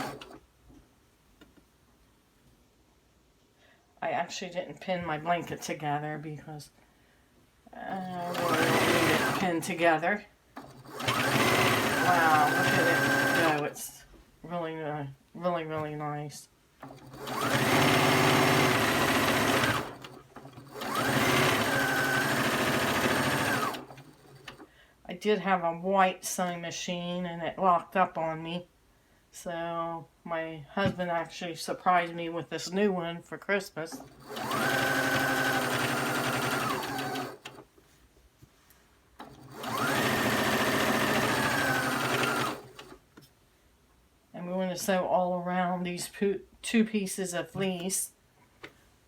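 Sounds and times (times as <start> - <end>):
sewing machine stitching: 0.0 - 0.4, 7.9 - 9.9, 10.6 - 13.8, 16.8 - 24.7, 33.9 - 37.7, 39.2 - 43.0.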